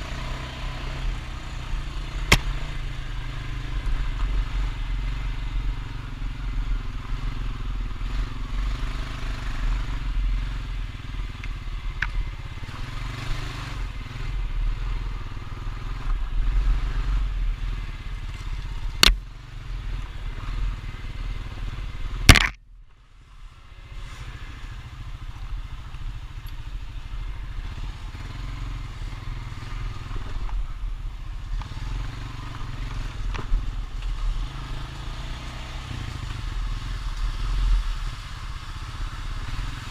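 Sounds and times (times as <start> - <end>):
atv engine running: 0.0 - 39.9
sharp knocks: 22.3 - 22.6.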